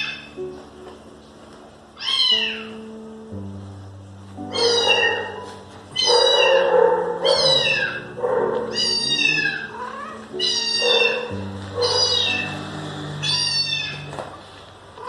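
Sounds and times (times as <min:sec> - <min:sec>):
background music: 0:00.0 - 0:15.0
cat meowing: 0:02.0 - 0:02.9, 0:04.5 - 0:14.4.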